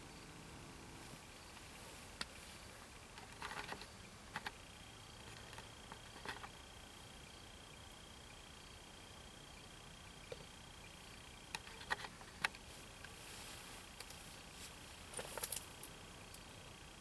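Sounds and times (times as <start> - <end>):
soft clicks and rustles: 11.5 - 16.5.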